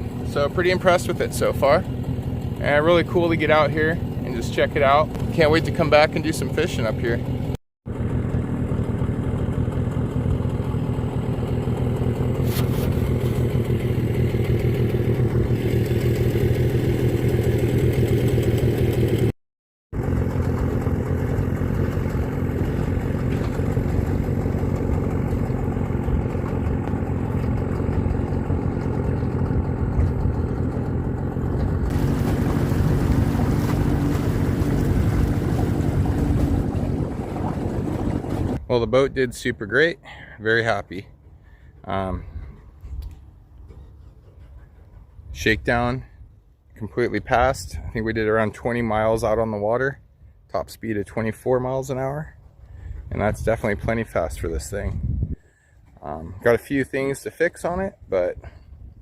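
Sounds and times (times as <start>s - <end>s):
hull and water noise: 0.0s - 7.6s, 8.4s - 19.3s, 20.0s - 46.0s
outboard motor running: 0.0s - 19.3s, 19.9s - 49.5s, 52.4s - 59.0s.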